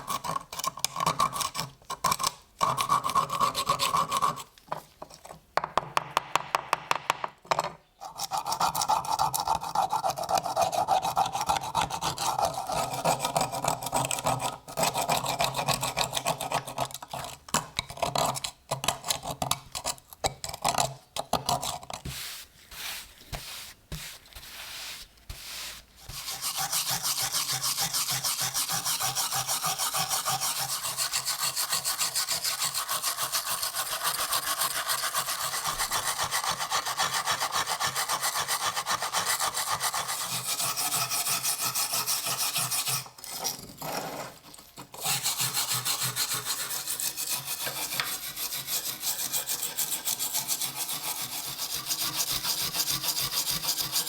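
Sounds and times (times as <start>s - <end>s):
tool scraping rusty metal: 40.5s - 54.0s.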